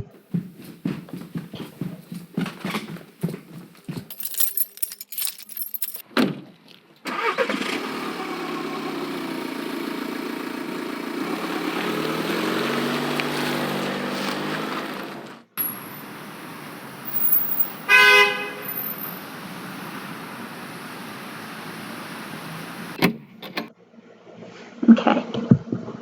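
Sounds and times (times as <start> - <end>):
car engine starting and running: 7.0 - 23.0.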